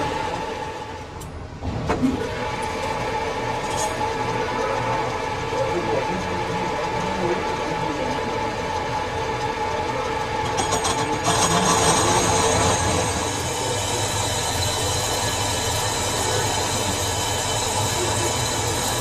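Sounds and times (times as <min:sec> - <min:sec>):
lathe low hum: 0:00.0 - 0:19.0
lathe tool screeching on metal: 0:10.1 - 0:19.0.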